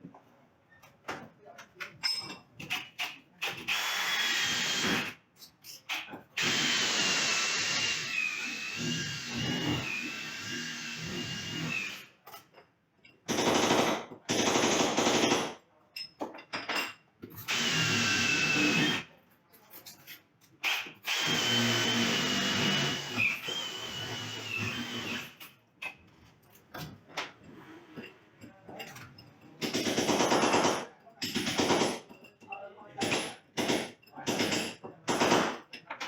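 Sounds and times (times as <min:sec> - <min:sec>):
electric drill running: 0:06.4 - 0:12.0, 0:17.5 - 0:19.0, 0:20.7 - 0:25.4.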